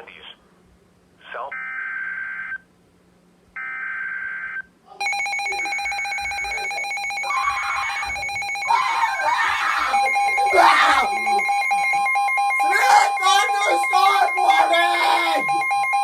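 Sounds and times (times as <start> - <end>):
telephone bell ringing: 5.0 - 16.0
telephone line tone: 5.0 - 16.0.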